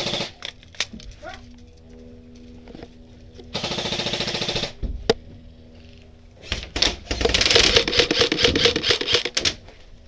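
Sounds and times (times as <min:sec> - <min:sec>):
airsoft rifle full-auto burst: 0:07.2 - 0:09.4.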